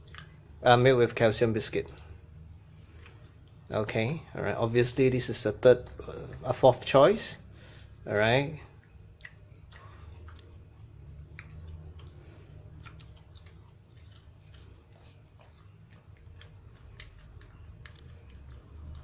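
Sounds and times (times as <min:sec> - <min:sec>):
low steady hum: 0:00.0 - 0:19.0
dog crunching a biscuit: 0:08.2 - 0:19.0.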